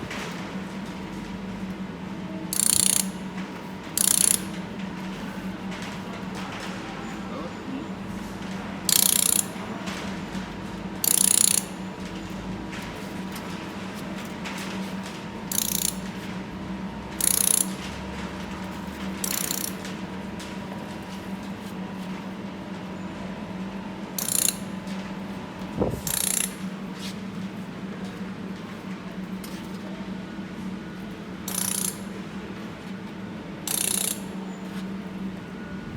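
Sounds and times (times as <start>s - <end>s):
welding machine humming: 8.4s - 22.2s, 31.5s - 35.7s.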